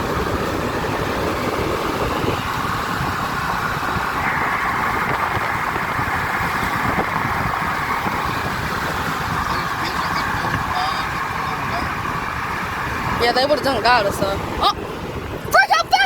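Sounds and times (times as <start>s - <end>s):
car engine hum: 0.0s - 16.0s
road noise inside a car: 0.0s - 16.0s.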